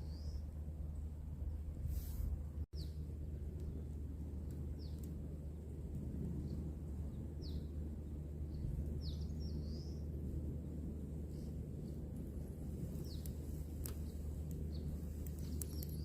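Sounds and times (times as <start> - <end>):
steady low rumble: 0.0 - 16.0
high falling bird chirps: 14.0 - 16.0.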